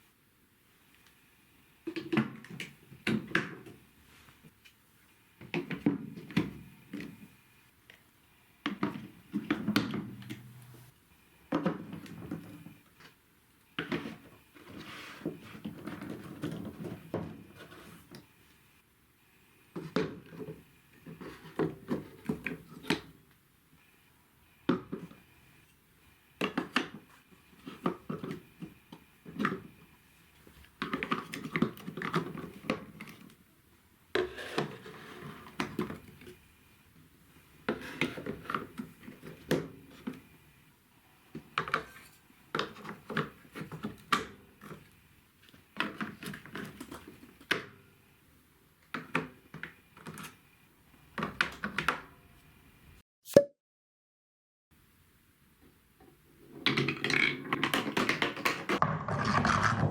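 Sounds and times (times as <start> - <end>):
marbles rolling down plastic track: 56.7 - 59.9.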